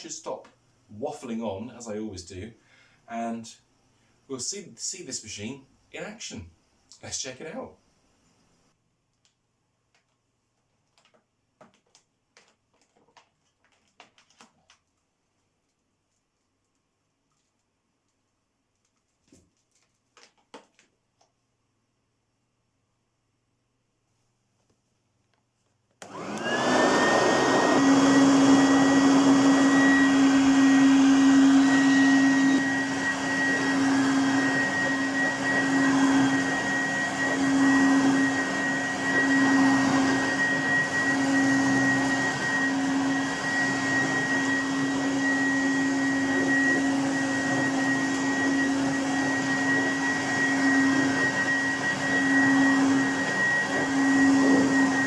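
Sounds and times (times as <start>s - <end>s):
vacuum cleaner motor whining: 26.0s - 55.0s.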